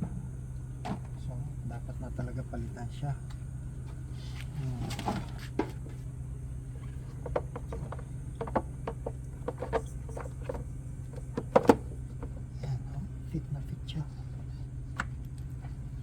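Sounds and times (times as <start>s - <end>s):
air filter clicking in plastic housing: 7.2s - 12.4s.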